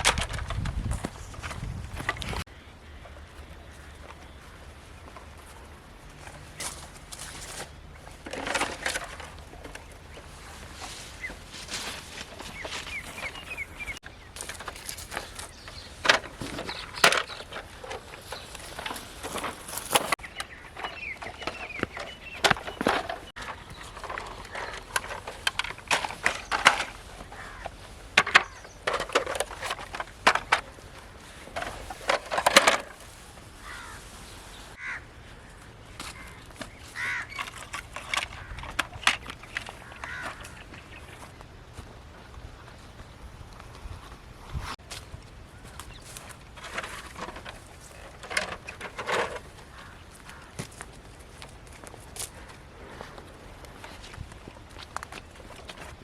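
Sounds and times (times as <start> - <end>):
faint birds chirping: 1.0 - 56.0
toy models clicking and knocking: 20.8 - 30.7.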